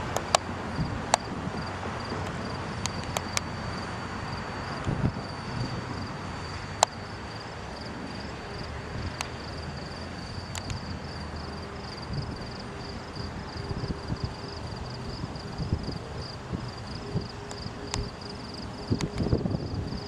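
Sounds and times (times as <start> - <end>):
low outdoor rumble: 0.0 - 20.0
sharp clicks: 0.1 - 0.5, 2.2 - 3.5, 9.2 - 9.4, 10.5 - 10.8, 18.9 - 19.3
insects trilling: 0.2 - 20.0.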